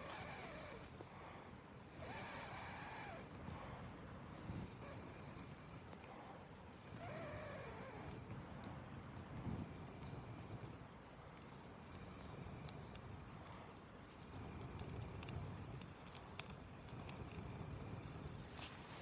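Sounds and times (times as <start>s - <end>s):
campfire crackling: 11.4s - 19.0s
wood popping in fire: 12.6s - 19.0s.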